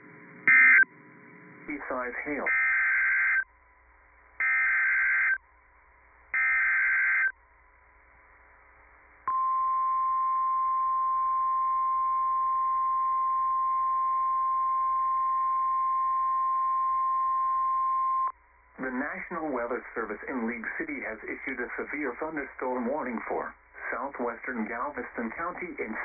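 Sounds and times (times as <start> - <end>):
screeching digital data tones: 0.5 - 0.9, 1.9 - 3.5, 4.4 - 5.4, 6.3 - 7.4
steady warning alarm tone: 0.5 - 0.9, 2.4 - 3.5, 4.4 - 5.6, 6.3 - 7.4.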